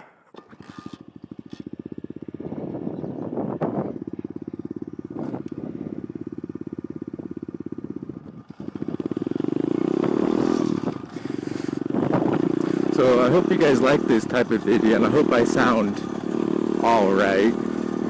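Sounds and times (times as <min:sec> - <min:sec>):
motorbike engine idling and revving: 0:00.3 - 0:18.0.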